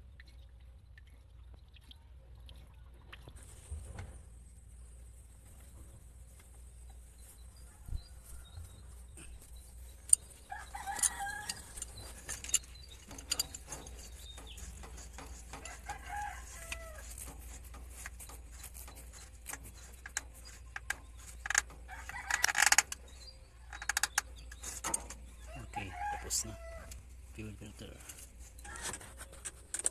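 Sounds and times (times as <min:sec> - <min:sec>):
chicken calls: 0:07.6 - 0:12.2, 0:25.4 - 0:27.0
sharp clicks and knocks: 0:09.9 - 0:25.4, 0:28.0 - 0:29.9
rooster crowing: 0:10.5 - 0:11.8, 0:15.6 - 0:17.1, 0:25.5 - 0:27.0.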